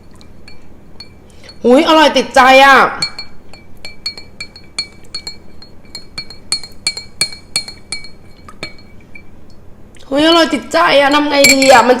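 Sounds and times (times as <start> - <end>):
spoon clinking in a glass: 0.4 - 1.6, 3.0 - 9.3, 11.3 - 12.0.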